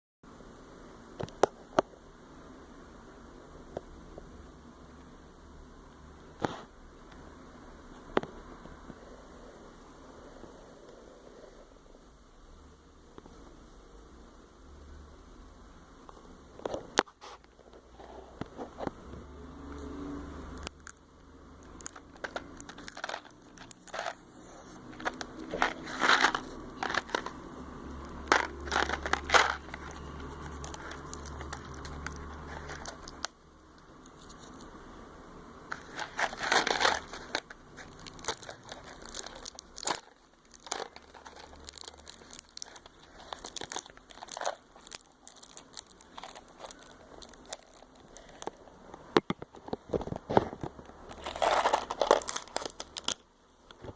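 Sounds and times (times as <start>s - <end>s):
low hum: 0.3s - 16.6s
packaging crinkling and rustling: 21.6s - 33.3s, 35.7s - 53.9s.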